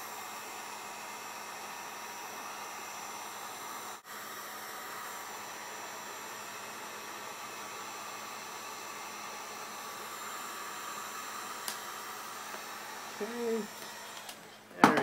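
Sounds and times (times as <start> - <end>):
heat gun blowing: 0.0 - 14.7.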